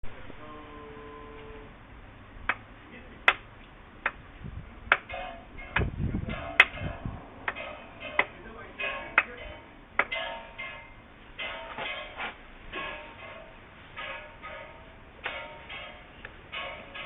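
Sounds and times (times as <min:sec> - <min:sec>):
metallic rattle: 0:05.0 - 0:17.0.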